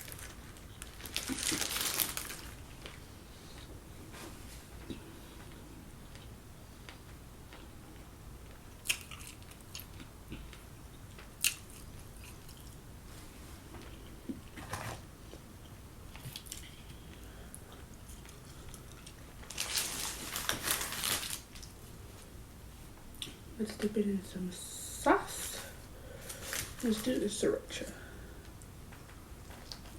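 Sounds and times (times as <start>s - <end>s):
crunchy crackle: 0.0s - 3.0s, 8.4s - 12.9s, 17.9s - 21.9s
chewing and biting food: 8.8s - 12.8s.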